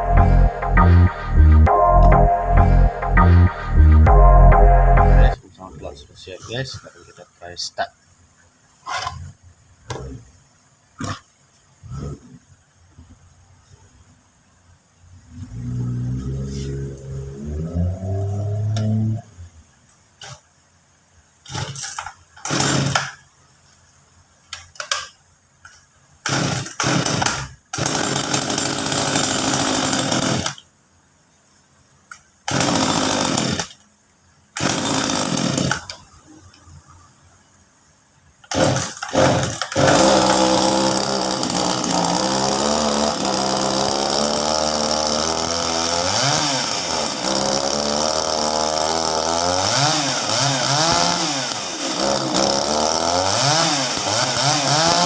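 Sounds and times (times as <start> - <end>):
chainsaw pull-starting: 21.4 - 23.2, 26.2 - 30.7, 32.5 - 33.8, 34.6 - 36.0, 38.4 - 55.0
chainsaw engine running and revving: 26.3 - 30.5, 32.5 - 33.7, 34.6 - 35.8, 38.5 - 55.0.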